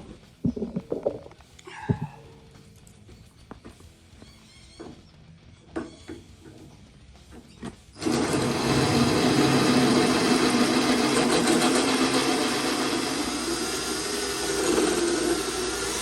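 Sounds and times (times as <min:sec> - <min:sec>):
electric drill drilling: 0:08.0 - 0:16.0.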